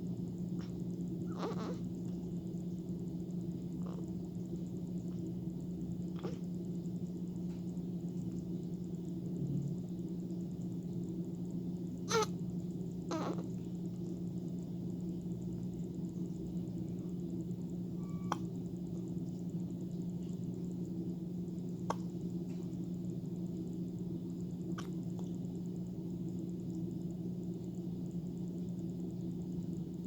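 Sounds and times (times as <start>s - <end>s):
steady low hum: 0.0s - 30.0s
baby hiccupping: 1.3s - 1.8s, 12.1s - 12.3s, 13.1s - 13.5s.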